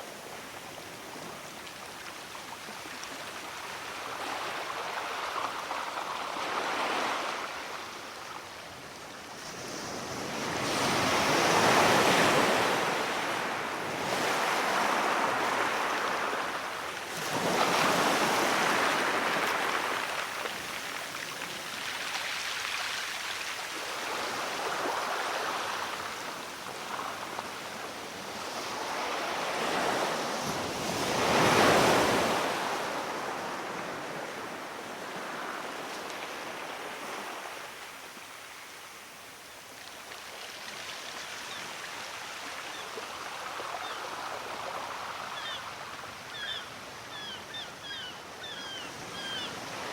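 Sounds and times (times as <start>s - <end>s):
waves breaking on shore: 9.2s - 46.6s.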